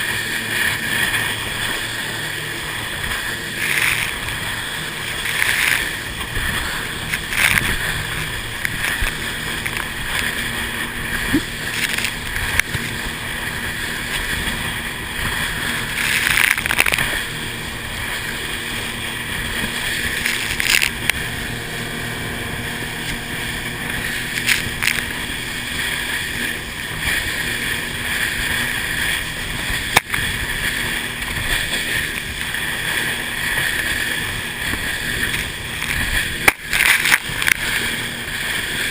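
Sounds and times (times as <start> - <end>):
choppy water rushing: 0.0 - 38.9
motorboat engine: 0.0 - 38.9.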